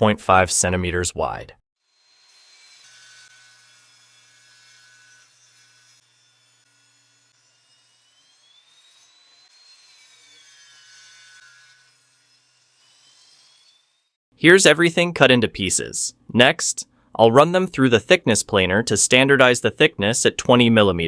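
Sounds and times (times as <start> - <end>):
table saw cutting wood: 1.8 - 14.2.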